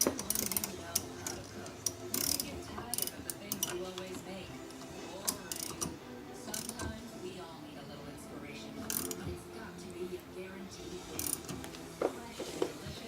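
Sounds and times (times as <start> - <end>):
ratchet wrench clicking: 0.0 - 4.1, 5.2 - 5.9, 8.9 - 9.2, 11.2 - 11.5.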